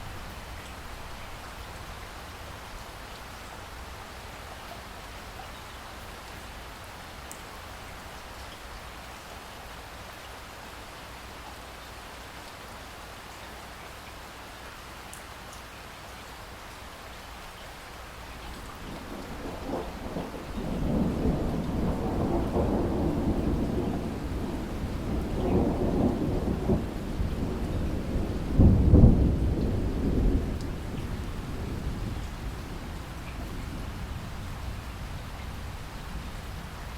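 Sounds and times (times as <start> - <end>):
steady rain: 0.0 - 36.9
thunder rumbling: 18.8 - 36.9.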